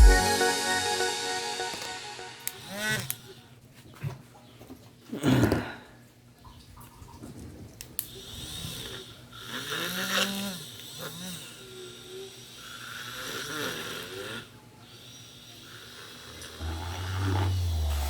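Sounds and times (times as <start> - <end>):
rasping rising and falling in pitch: 16.6 - 18.0.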